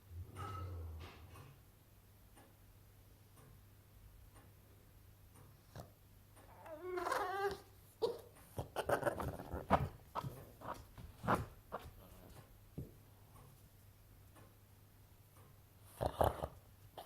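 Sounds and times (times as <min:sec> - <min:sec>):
dog whining: 0:06.4 - 0:09.9.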